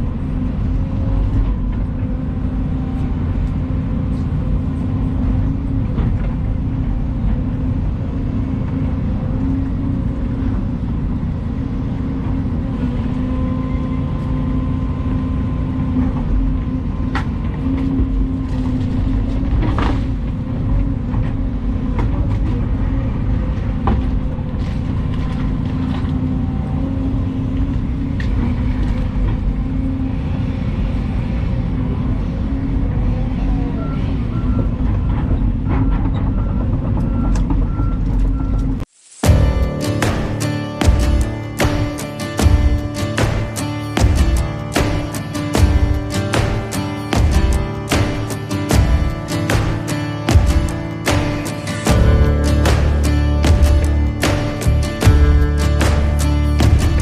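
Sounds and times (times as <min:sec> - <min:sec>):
diesel engine humming: 0:00.0 - 0:57.0.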